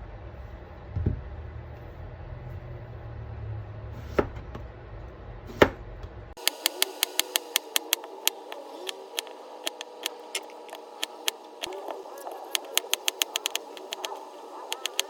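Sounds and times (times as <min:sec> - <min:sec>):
thump: 0:01.0 - 0:01.2
knife chopping on cutting board: 0:04.0 - 0:04.6, 0:05.5 - 0:05.9
sharp clicks: 0:06.4 - 0:15.0.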